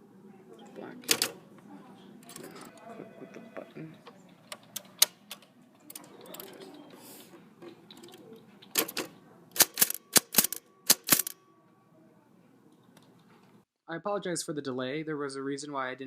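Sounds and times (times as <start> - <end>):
typewriter striking characters: 1.0 - 1.4, 8.7 - 11.4.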